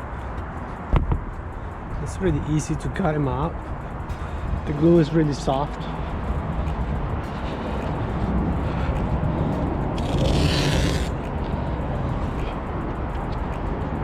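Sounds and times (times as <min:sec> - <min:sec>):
knife scraping through urethane: 0:10.0 - 0:11.2.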